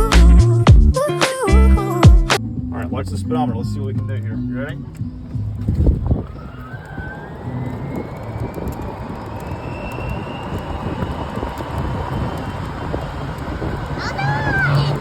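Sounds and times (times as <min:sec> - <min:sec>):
steady rumble with rattles: 0:02.4 - 0:15.0
golf cart motor whine: 0:04.8 - 0:15.0.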